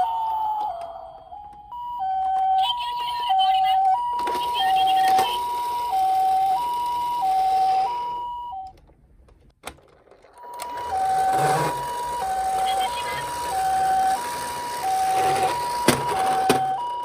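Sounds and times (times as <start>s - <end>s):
toy ambulance two-tone siren: 0.0s - 8.7s, 10.3s - 17.0s.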